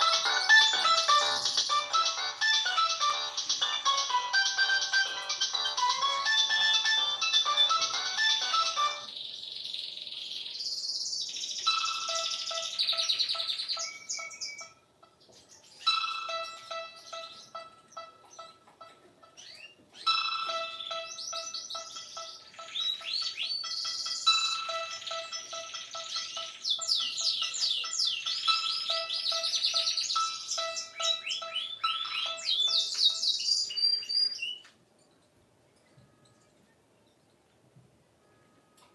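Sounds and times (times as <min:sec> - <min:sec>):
melodic ringtone: 0:00.0 - 0:09.2, 0:11.6 - 0:34.7
chirping ringtone trills: 0:00.0 - 0:37.4.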